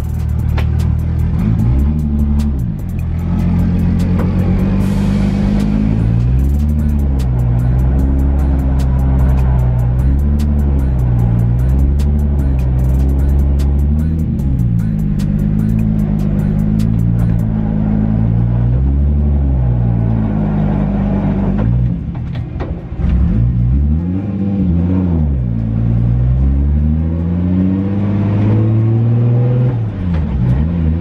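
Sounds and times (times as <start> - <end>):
car engine accelerating: 0.0 - 31.0.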